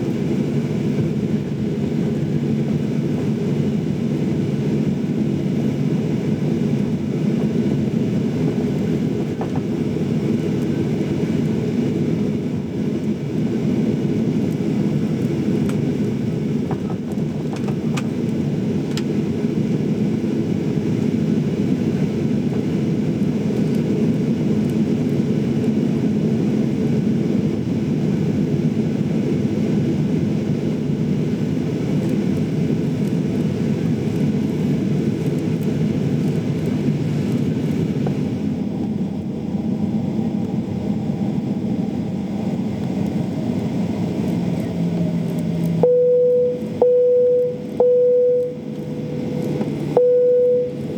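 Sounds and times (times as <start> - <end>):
airliner cabin rumble and hum: 0.0 - 50.9.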